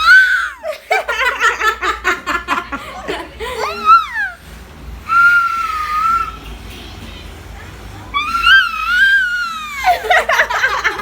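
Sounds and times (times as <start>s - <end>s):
high wailing voice: 3.4s - 4.4s, 5.1s - 6.4s, 8.1s - 10.2s
person laughing: 9.8s - 11.0s.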